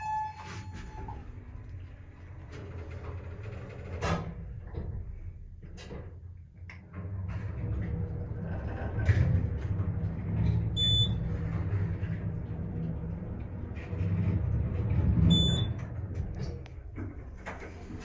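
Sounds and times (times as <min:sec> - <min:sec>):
elevator motor humming: 0:07.0 - 0:18.0.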